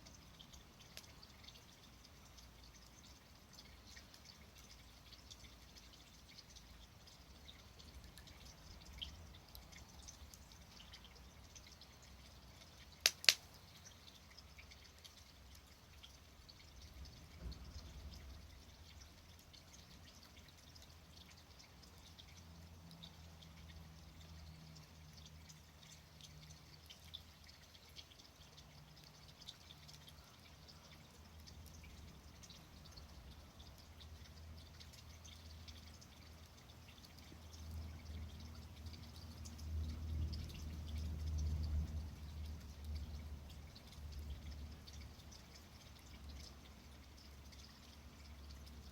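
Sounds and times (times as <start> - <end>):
campfire crackling: 13.0 - 13.5.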